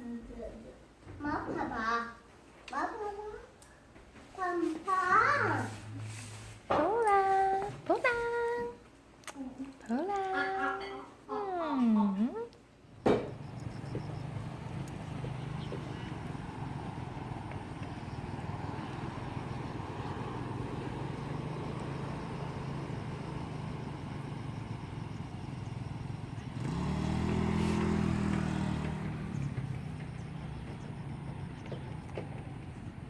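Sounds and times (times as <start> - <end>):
vehicle engine running: 12.9 - 33.0.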